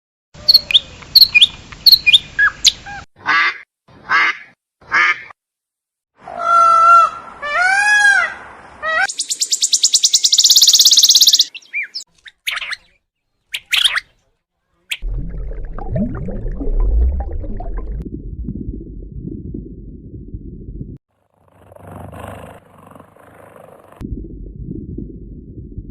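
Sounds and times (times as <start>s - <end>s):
sharp bird chirps: 0.5s - 2.8s, 9.1s - 14.1s
fast rattling bird trill: 9.1s - 11.6s.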